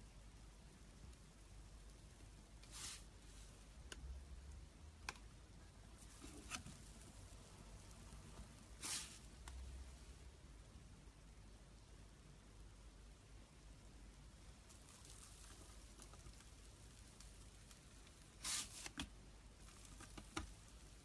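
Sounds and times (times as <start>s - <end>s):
slime squishing: 14.6s - 21.0s.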